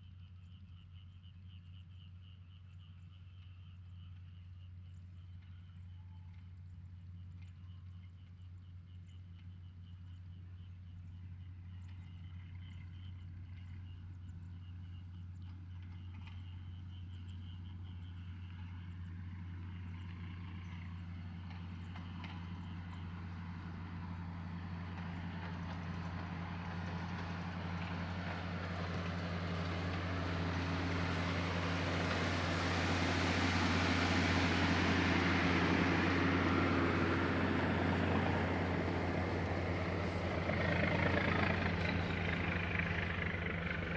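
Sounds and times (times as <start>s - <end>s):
diesel engine humming: 18.9s - 43.9s.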